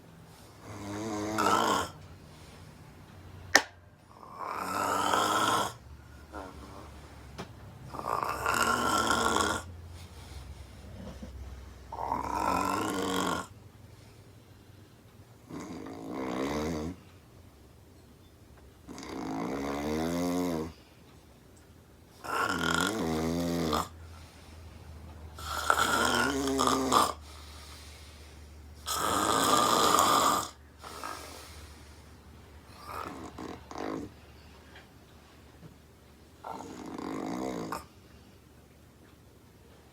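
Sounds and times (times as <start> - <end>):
woman snoring loudly: 0.6 - 2.0, 4.1 - 6.5, 7.9 - 9.7, 11.9 - 13.5, 15.5 - 17.0, 18.9 - 20.7, 22.2 - 24.0, 25.4 - 27.2, 28.8 - 31.4, 36.4 - 37.9.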